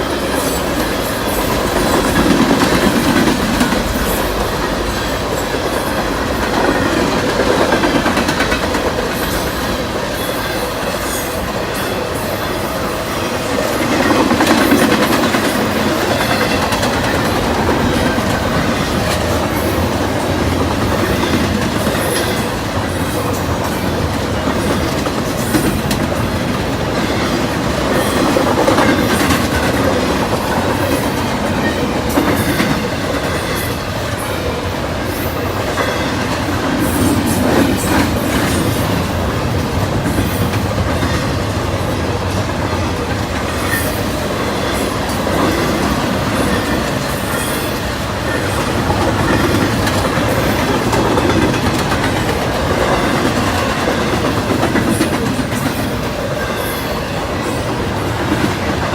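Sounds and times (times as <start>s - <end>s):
train wheels clicking over rail joints: 0.0s - 58.9s.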